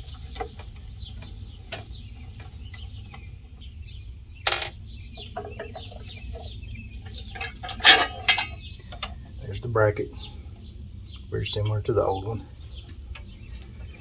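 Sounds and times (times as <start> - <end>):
metal clink: 7.4 - 8.6
screws and metal bracket clicking: 7.4 - 8.6.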